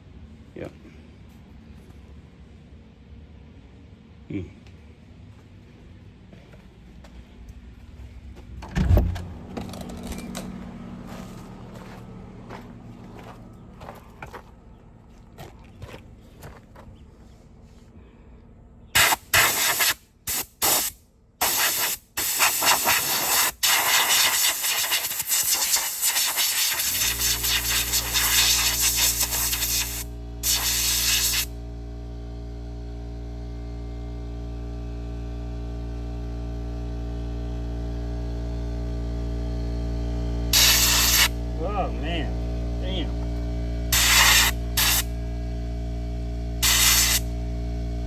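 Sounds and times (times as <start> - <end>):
air compressor humming: 6.8 - 16.8, 19.0 - 48.0
compressed air hissing: 19.0 - 31.6, 40.5 - 41.4, 43.9 - 45.1, 46.6 - 47.4.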